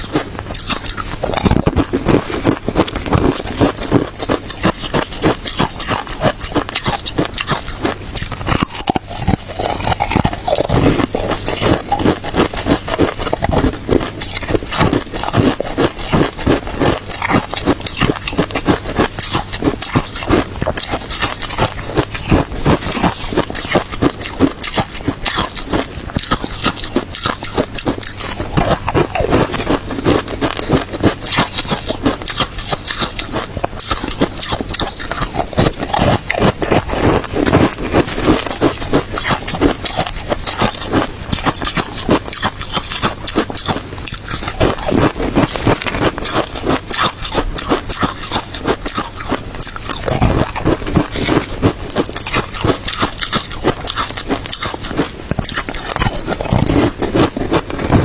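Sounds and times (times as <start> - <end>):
shaved ice being chewed: 0.0 - 58.0.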